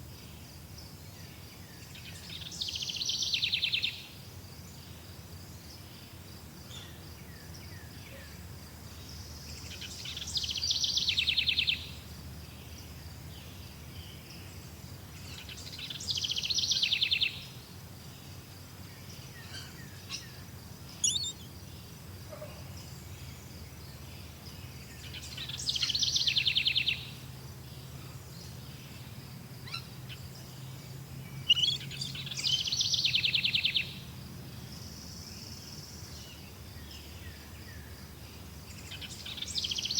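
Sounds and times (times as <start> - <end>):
songbird song with trill: 0.0 - 39.9
high insect-like whine: 19.0 - 21.8
short bird chirps: 21.0 - 21.5.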